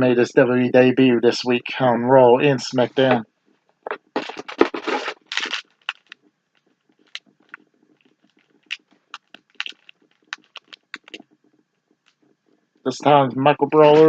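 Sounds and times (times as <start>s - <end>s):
light crackles and taps: 3.1s - 12.6s
packaging crinkling and rustling: 3.9s - 11.2s.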